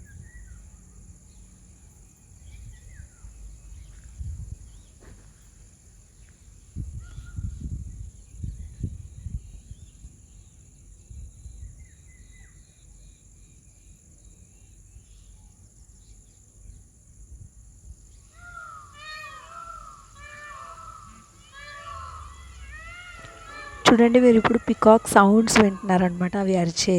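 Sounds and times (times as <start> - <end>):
outdoor background noise: 0.0 - 26.9
faint bird chirps: 18.1 - 26.9
peacocks calling: 18.3 - 26.9.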